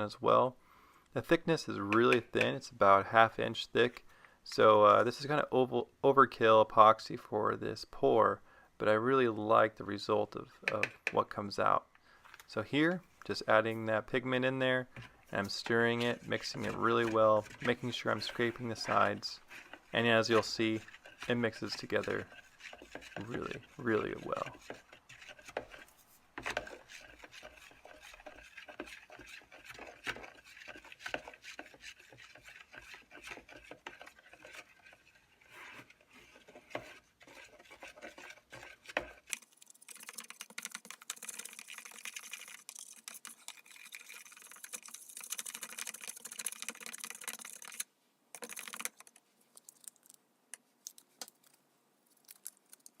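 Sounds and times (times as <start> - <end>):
stir stick scraping a cup: 14.9 - 49.2.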